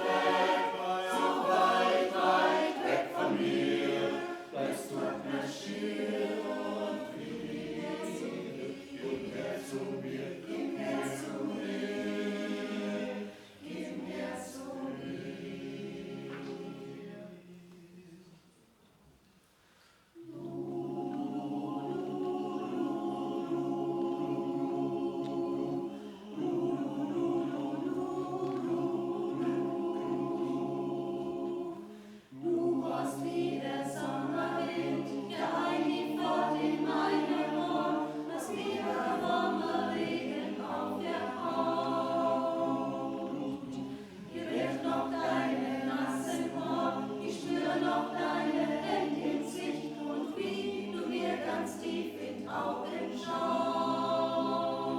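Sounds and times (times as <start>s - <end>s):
choir singing a cappella: 0.0s - 18.7s, 20.1s - 54.9s.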